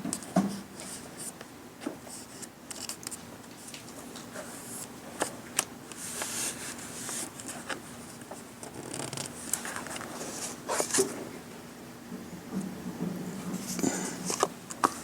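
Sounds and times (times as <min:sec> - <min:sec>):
paper and plastic rustling: 0:00.2 - 0:11.4.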